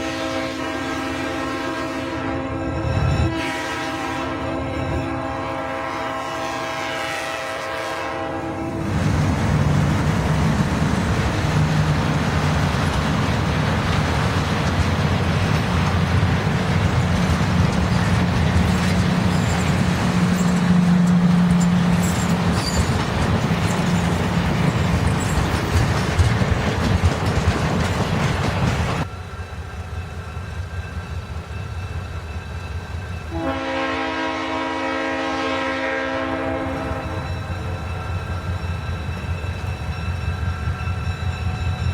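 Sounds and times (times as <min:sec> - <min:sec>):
locomotive air horn chord: 0:00.0 - 0:09.0, 0:33.3 - 0:37.3
train rail noise: 0:00.0 - 0:41.9.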